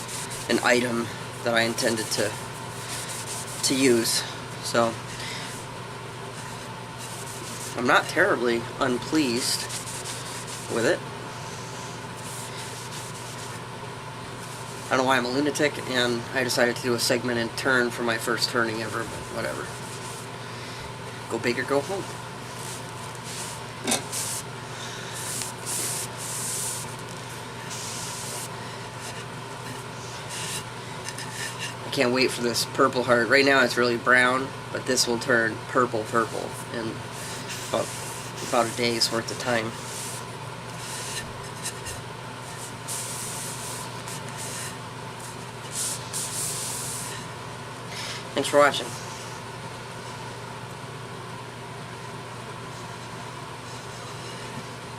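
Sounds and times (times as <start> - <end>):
hissing rubbing on rolling pin: 0.0 - 5.7, 9.0 - 13.7, 21.6 - 31.8, 36.0 - 47.3
low machine hum: 0.0 - 54.9.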